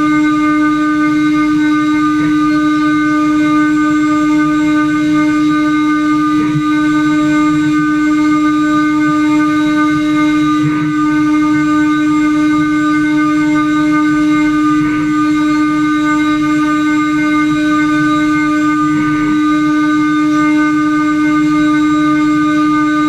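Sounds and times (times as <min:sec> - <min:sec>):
router spindle whine: 0:00.0 - 0:23.0.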